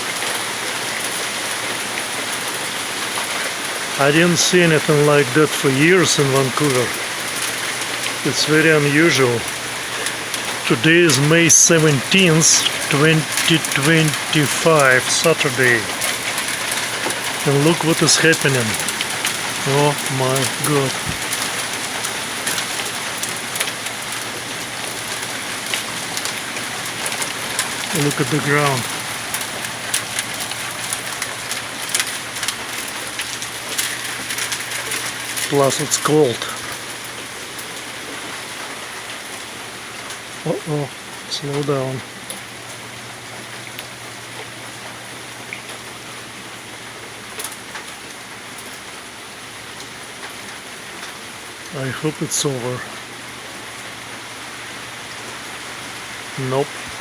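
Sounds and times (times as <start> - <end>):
heavy rain hissing: 0.0 - 57.0
hailstones striking: 6.1 - 37.5.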